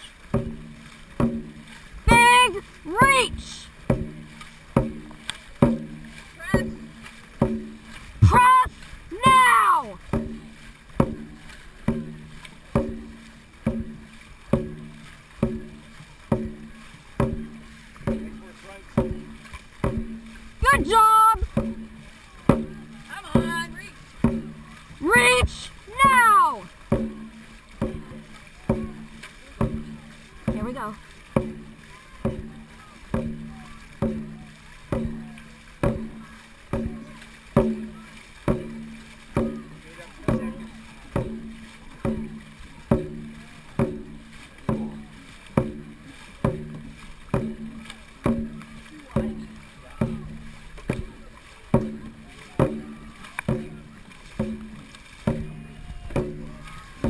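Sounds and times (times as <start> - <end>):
drum beaten steadily: 0.0 - 57.0
drum booming strokes: 0.3 - 9.5.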